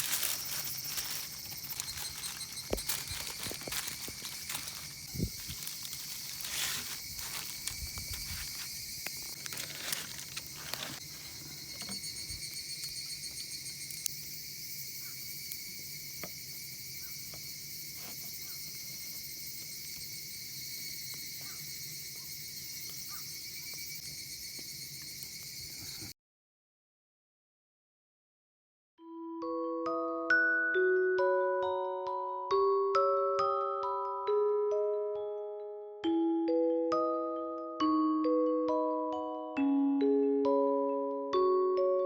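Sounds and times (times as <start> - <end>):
insects trilling: 0.0 - 26.1.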